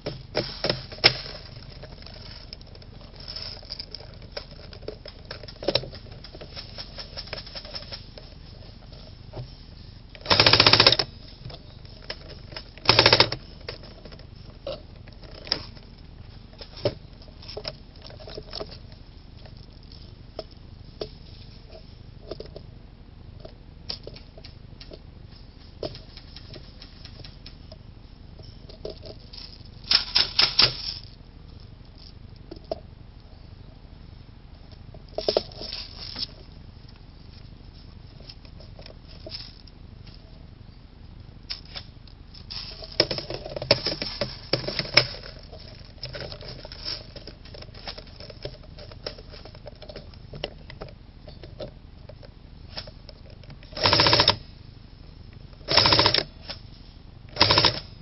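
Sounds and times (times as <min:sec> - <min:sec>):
airsoft gun firing bursts: 0:10.2 - 0:11.0, 0:12.9 - 0:13.4, 0:53.8 - 0:54.4, 0:55.7 - 0:56.2, 0:57.4 - 0:57.9
faint clicks and rustling: 0:23.4 - 0:33.4.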